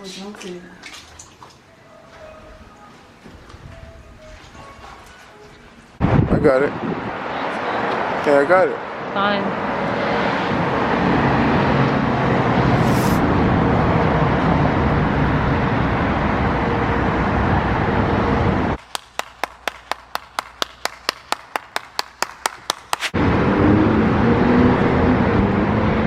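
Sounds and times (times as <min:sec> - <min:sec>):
car road noise: 0:05.9 - 0:18.8, 0:23.1 - 0:26.0.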